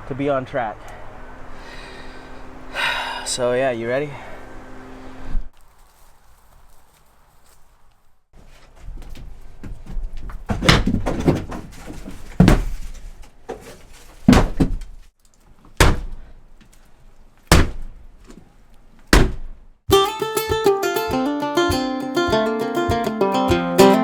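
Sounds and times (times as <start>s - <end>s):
heavy blows on wood: 9.7s - 13.0s, 14.2s - 15.0s, 15.8s - 16.4s, 17.4s - 18.2s, 19.0s - 20.0s
acoustic guitar music: 19.9s - 24.0s.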